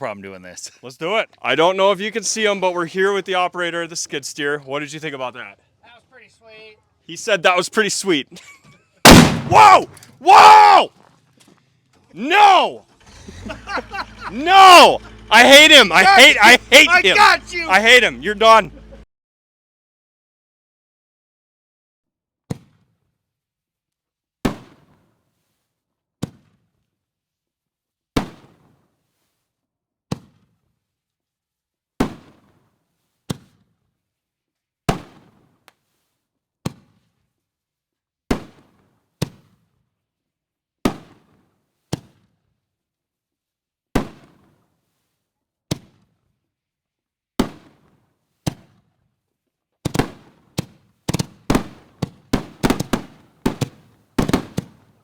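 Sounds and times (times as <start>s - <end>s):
firework shells banging: 9.1s - 10.2s.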